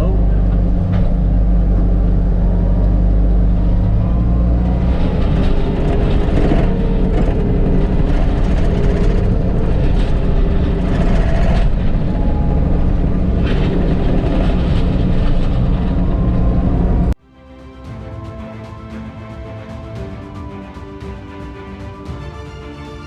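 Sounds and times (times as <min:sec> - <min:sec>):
loader diesel engine running: 0:00.0 - 0:17.2.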